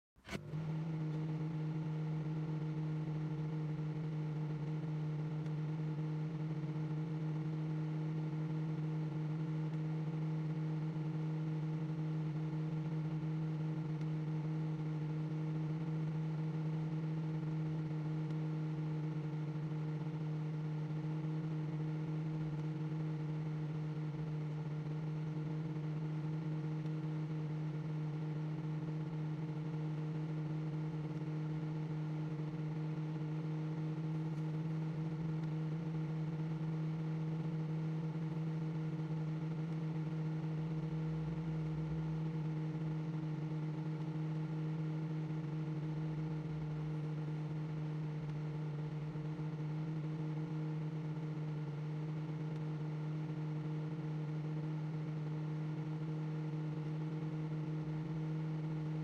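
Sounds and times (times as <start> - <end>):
microwave oven humming: 0.3 - 59.0.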